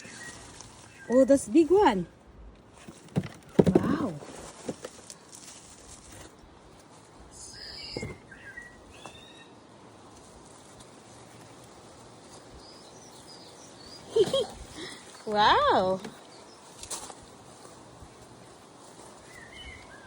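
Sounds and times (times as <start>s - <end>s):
small birds chirping: 0.0s - 2.2s, 6.7s - 20.0s.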